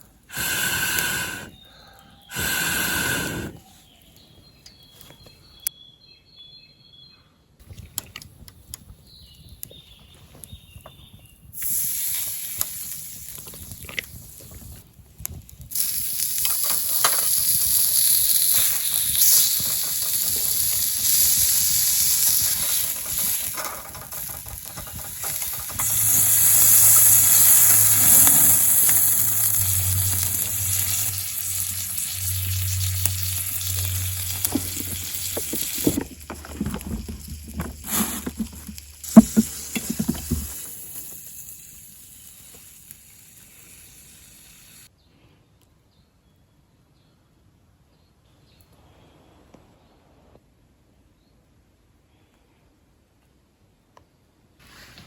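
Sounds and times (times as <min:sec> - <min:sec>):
food sizzling in a pan: 0:25.8 - 0:35.9.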